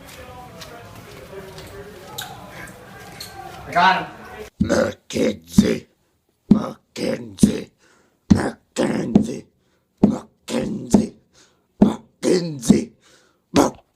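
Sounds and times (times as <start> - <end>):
person making weird vocal noises: 4.6 - 5.9, 6.5 - 11.2, 11.8 - 13.9.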